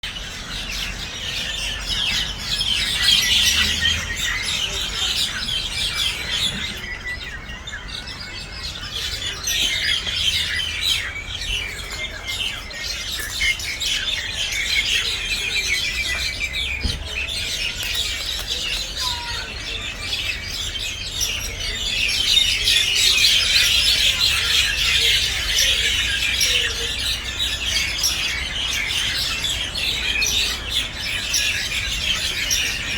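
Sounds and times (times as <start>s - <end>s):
flock of birds chattering: 0.0s - 32.9s.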